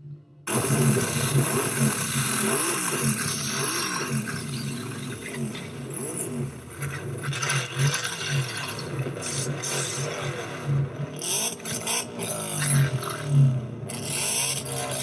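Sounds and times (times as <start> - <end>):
car engine revving: 0.5 - 15.0.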